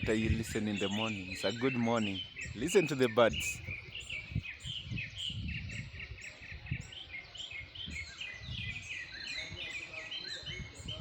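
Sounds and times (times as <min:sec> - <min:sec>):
birds chirping and singing: 0:00.0 - 0:11.0.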